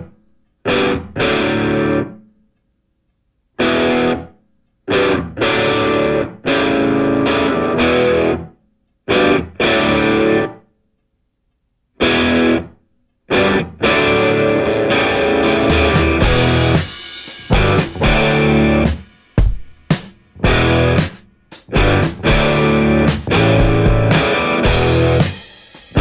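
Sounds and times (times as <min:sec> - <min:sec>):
distorted electric guitar chords: 0:00.7 - 0:02.2, 0:03.6 - 0:04.3, 0:04.9 - 0:08.5, 0:09.1 - 0:10.6, 0:12.0 - 0:19.6, 0:20.3 - 0:26.0.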